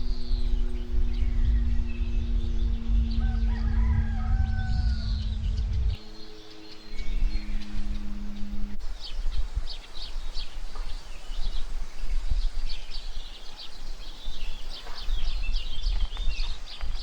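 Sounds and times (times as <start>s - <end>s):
small birds chirping: 0.0s - 17.0s
steady low rumble: 0.0s - 17.0s.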